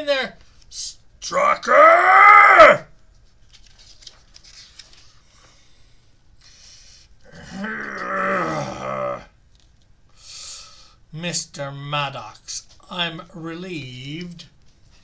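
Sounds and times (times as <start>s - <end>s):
man groaning: 1.3s - 2.8s, 7.3s - 9.3s
faint clicks and rustling: 3.0s - 5.6s, 9.5s - 10.0s.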